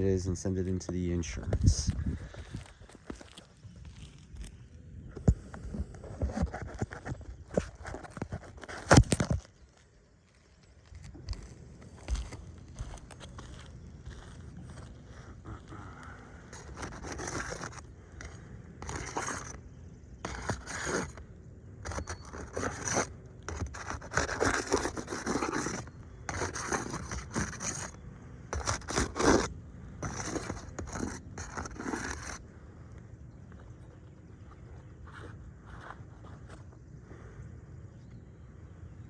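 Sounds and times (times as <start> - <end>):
scraping on roof shingles: 11.0 - 19.6, 20.2 - 21.2, 21.8 - 32.4.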